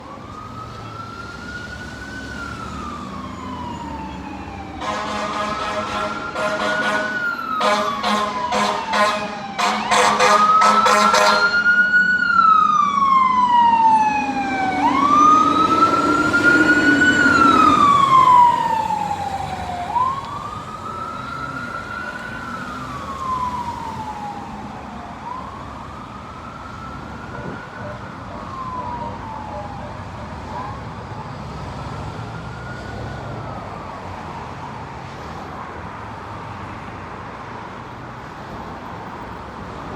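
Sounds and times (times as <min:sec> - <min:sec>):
siren wailing: 0:00.0 - 0:35.1
air horn blasts: 0:04.8 - 0:11.7
truck engine rumble: 0:09.5 - 0:34.4.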